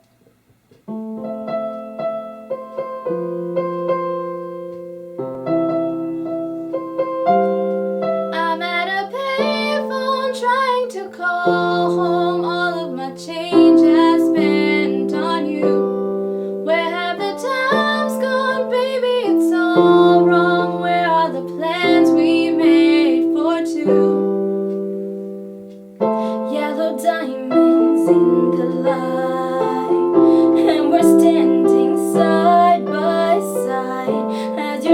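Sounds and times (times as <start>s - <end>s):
piano chords: 0.8s - 34.9s
woman singing: 8.3s - 24.7s, 26.1s - 34.9s.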